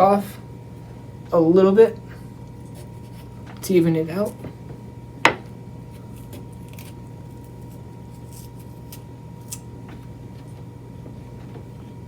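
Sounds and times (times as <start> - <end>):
low electrical hum: 0.0 - 12.0
knife cutting ticks and scrapes: 6.0 - 9.7.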